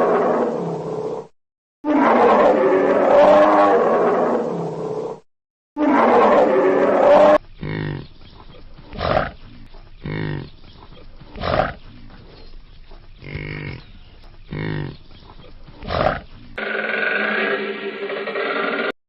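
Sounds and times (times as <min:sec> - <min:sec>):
animal calling: 0:05.8 - 0:18.9.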